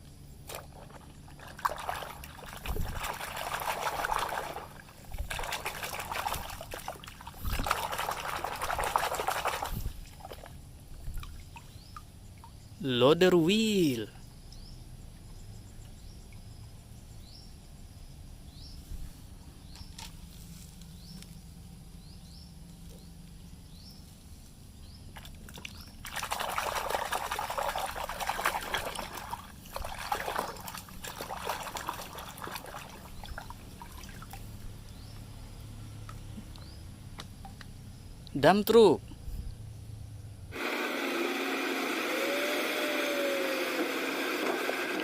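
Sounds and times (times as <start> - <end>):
water pouring and splashing: 0.5 - 11.8, 25.2 - 34.8.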